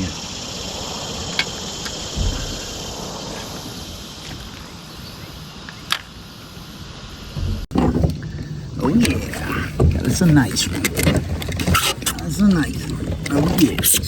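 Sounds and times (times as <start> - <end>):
insects chorus: 0.0 - 14.0
low knock: 2.2 - 3.0, 7.3 - 8.3.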